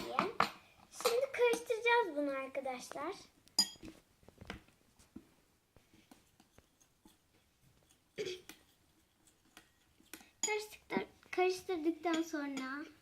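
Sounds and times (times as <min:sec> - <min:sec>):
spoon stirring thick glue: 0:05.0 - 0:13.0.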